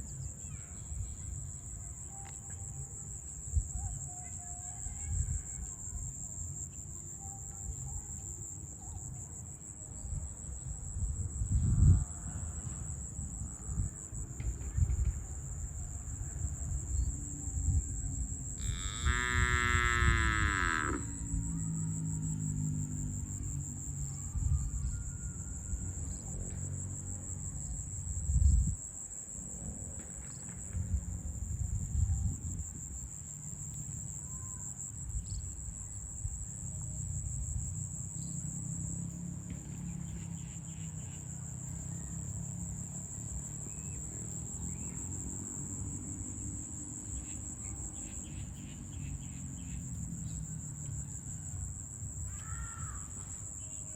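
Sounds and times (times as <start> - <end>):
cow mooing: 18.6 - 21.2
insect chirring: 51.7 - 53.8.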